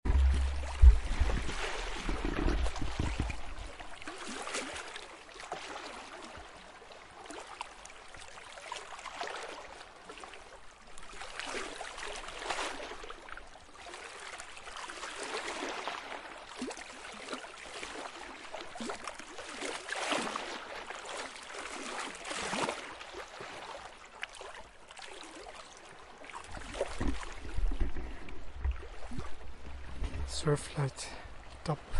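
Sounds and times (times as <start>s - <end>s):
low rumble: 0.0s - 3.6s
small waves lapping on shore: 0.1s - 31.9s.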